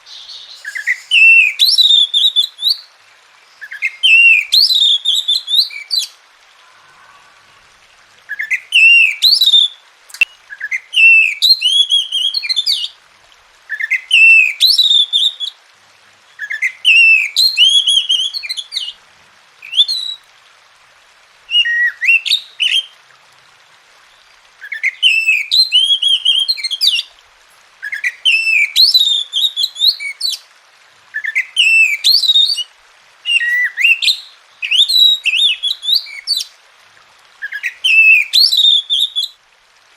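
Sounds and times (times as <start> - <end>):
bird whistled song: 0.0 - 2.9, 3.6 - 7.6, 8.3 - 12.9, 13.7 - 15.5, 16.4 - 19.0, 24.6 - 27.1, 27.8 - 30.4, 31.2 - 32.7, 33.3 - 36.5, 37.4 - 39.4.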